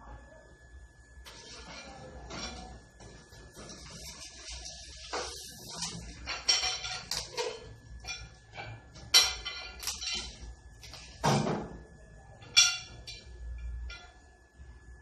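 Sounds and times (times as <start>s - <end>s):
clinks knocks and rustles: 5.1s - 10.4s.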